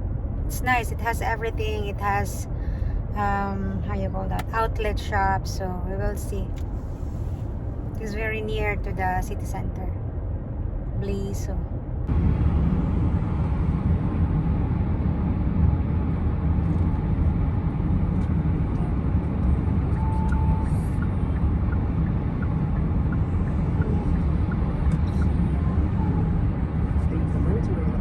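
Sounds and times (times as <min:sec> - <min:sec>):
car cabin road noise: 0:00.0 - 0:12.2.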